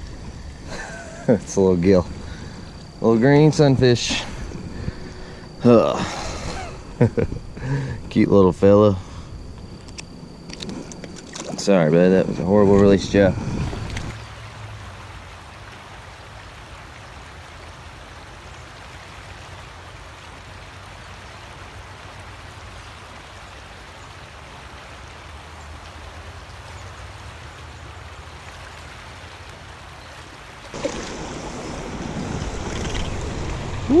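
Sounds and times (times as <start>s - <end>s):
creek water rushing: 11.3s - 34.0s.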